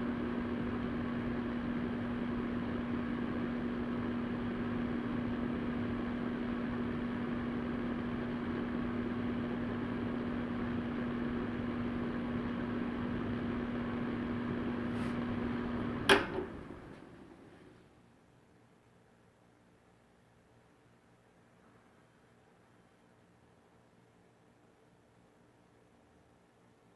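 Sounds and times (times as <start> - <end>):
fan spinning down: 0.0 - 17.8
fan heater blowing with hum: 0.0 - 26.9
heater switch click: 16.0 - 17.1.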